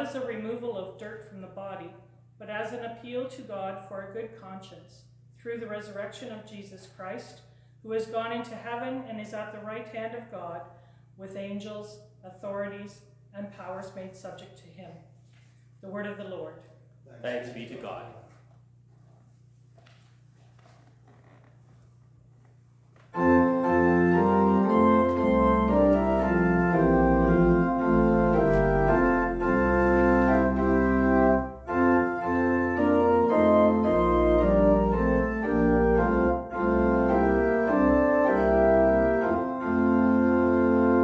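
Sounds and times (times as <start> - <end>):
organ playing full chords: 23.1 - 41.0.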